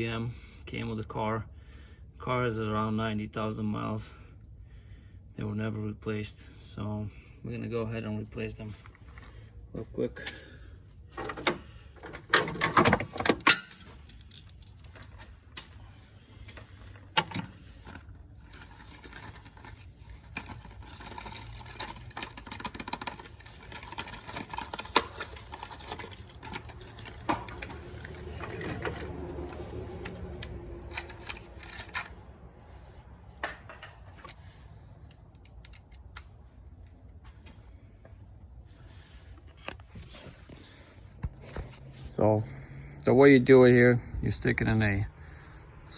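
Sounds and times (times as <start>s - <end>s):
metal tools clinking and rattling: 8.7s - 37.2s.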